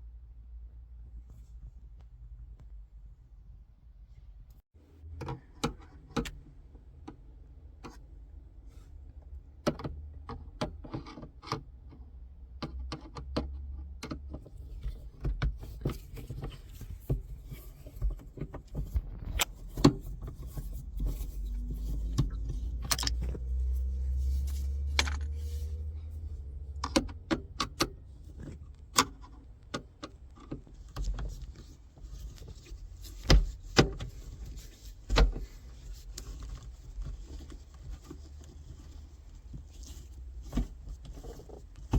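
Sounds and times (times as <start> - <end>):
low handling rumble: 18.6 - 29.7.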